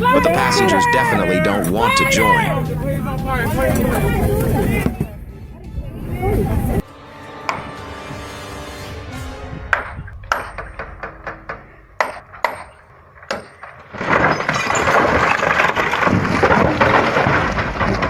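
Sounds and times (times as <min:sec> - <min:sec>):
sharp knocks with high ring: 0:10.3 - 0:13.7.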